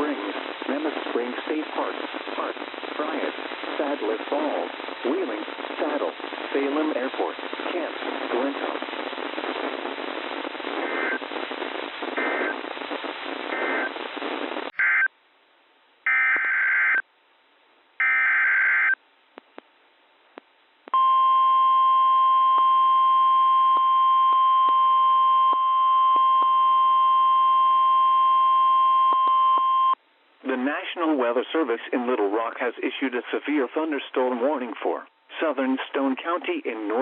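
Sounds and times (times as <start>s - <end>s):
radio static: 0.0s - 15.1s, 30.4s - 37.0s.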